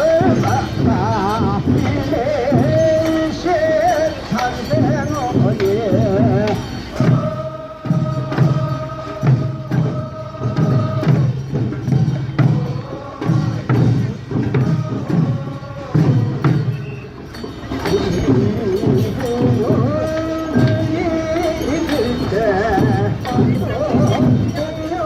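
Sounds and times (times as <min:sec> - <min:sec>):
low group voices: 0:00.0 - 0:25.0.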